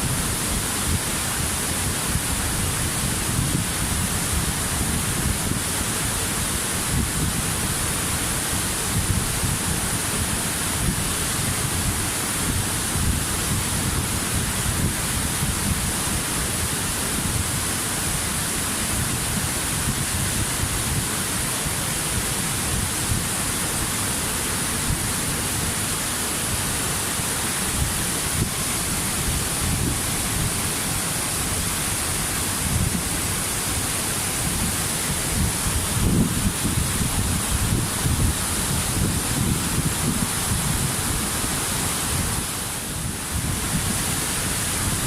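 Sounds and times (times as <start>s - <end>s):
waterfall rushing: 0.0s - 45.0s.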